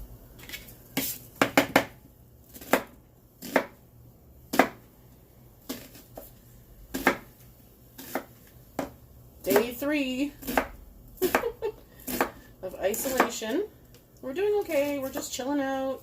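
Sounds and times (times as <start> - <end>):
knife chopping on cutting board: 2.6 - 3.8, 4.5 - 4.8, 6.9 - 7.3, 8.0 - 9.7.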